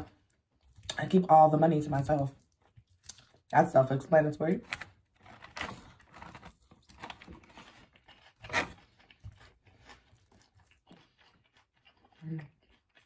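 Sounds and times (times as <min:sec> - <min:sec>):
person chewing crunchy food: 0:01.9 - 0:03.6, 0:04.6 - 0:13.0.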